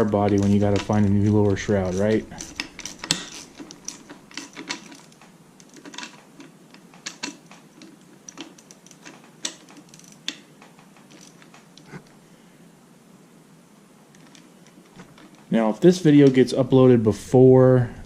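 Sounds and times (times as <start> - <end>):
metal hand tools clicking: 0.0 - 11.8.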